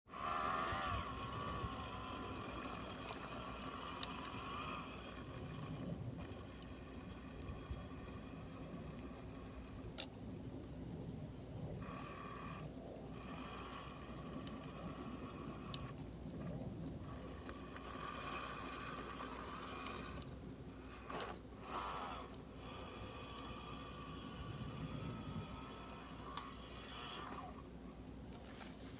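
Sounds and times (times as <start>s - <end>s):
electric motor whining: 0.1s - 10.1s, 11.6s - 28.1s
small clicks: 0.2s - 11.0s, 11.8s - 23.7s, 25.0s - 28.8s.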